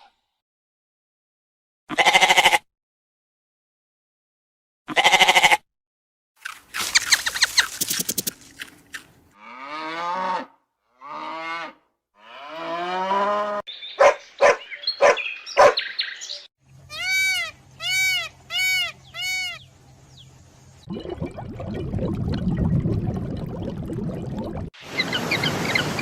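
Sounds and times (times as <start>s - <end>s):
cows mooing: 9.4s - 13.6s
high-pitched animal calls: 16.9s - 19.7s.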